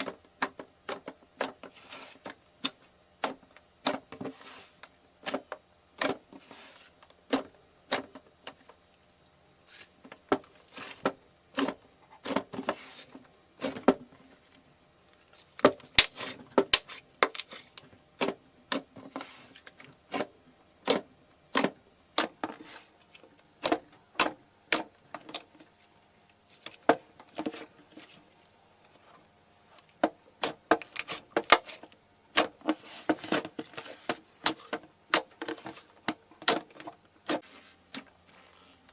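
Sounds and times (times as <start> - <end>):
crunchy objects being crushed: 9.7 - 25.8, 26.4 - 38.9.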